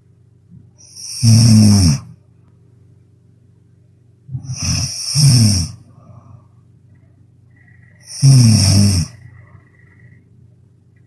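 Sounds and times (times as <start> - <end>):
person snoring loudly: 0.8 - 2.1, 4.3 - 5.8, 8.0 - 9.3.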